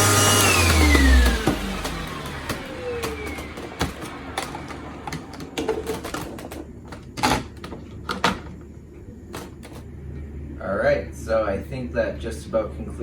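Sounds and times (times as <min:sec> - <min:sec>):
vacuum motor winding down: 0:00.0 - 0:06.6
scattered clicks and knocks: 0:01.2 - 0:08.7, 0:09.3 - 0:09.8.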